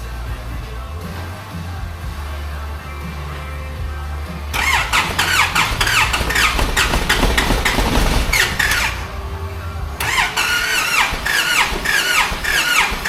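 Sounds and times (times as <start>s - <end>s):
diesel engine running: 0.0s - 13.0s
rapid falling squeaks: 4.6s - 13.0s.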